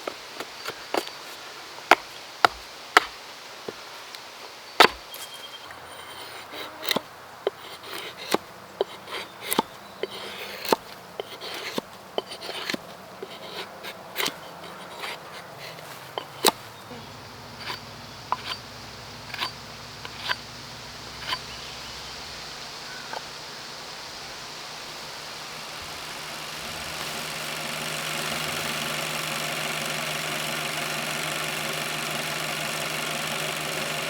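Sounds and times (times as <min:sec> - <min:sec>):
hatchet chopping wood: 0:01.9 - 0:03.8, 0:04.8 - 0:05.3, 0:06.9 - 0:16.6, 0:17.6 - 0:20.4, 0:21.0 - 0:21.6
blade scraping wood: 0:04.8 - 0:34.0.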